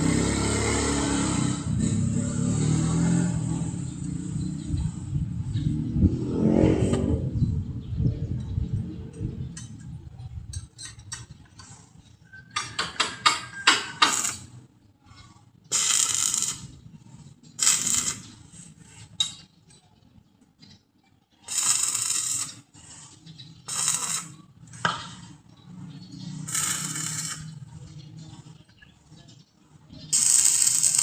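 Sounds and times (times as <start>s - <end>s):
short scraping strokes: 26.5s - 27.6s.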